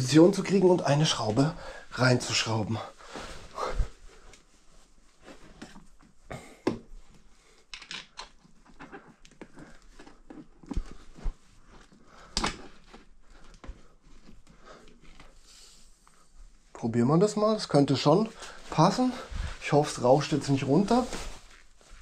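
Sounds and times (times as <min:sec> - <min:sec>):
clicks and knocks of bike parts: 0:07.7 - 0:09.5, 0:12.3 - 0:13.0.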